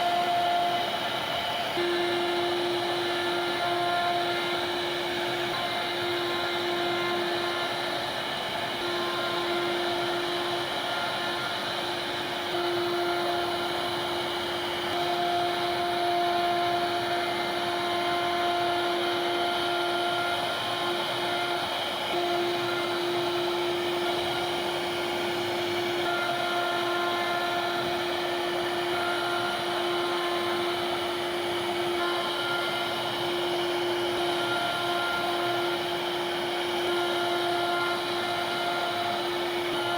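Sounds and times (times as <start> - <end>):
router spindle whine: 0.0 - 39.9.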